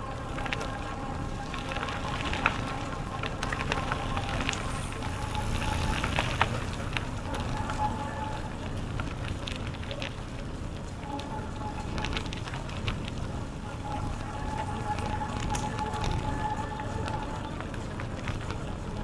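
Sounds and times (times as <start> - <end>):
low rumble: 0.0 - 10.8
bicycle tyres crackling on trail: 0.0 - 19.0.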